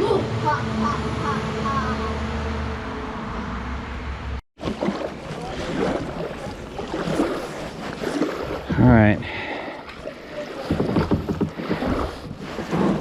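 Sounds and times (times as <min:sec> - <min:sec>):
paddle splashing water: 0:04.6 - 0:13.0.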